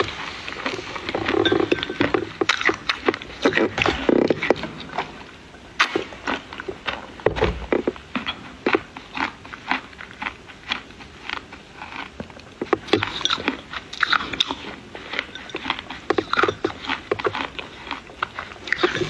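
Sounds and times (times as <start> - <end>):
person chewing crunchy clay: 0.0 - 19.0.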